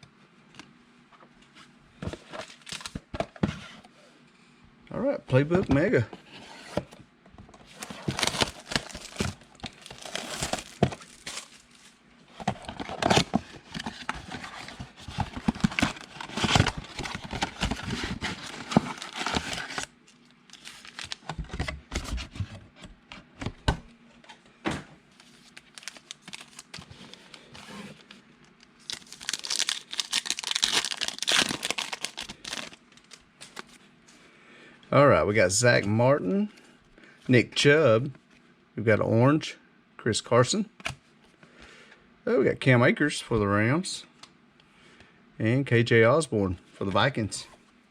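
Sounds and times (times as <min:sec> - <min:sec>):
card packs torn open crinkling: 0:02.3 - 0:03.0, 0:07.7 - 0:21.6, 0:25.2 - 0:33.8.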